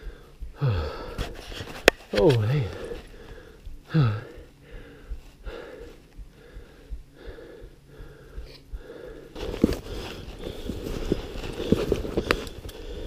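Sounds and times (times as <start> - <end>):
person breathing hard: 0.0 - 13.0
footsteps in deep snow: 9.3 - 13.0.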